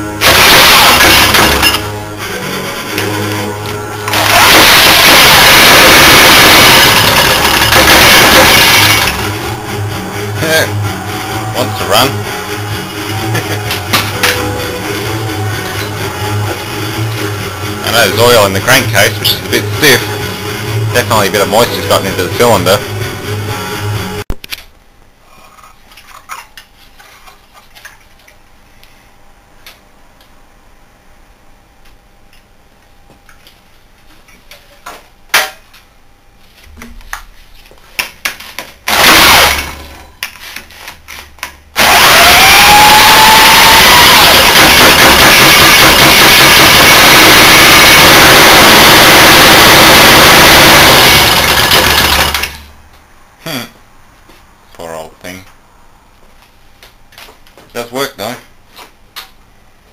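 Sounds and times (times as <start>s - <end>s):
small engine running loudly: 4.1s - 9.4s, 38.9s - 39.8s, 41.8s - 52.5s.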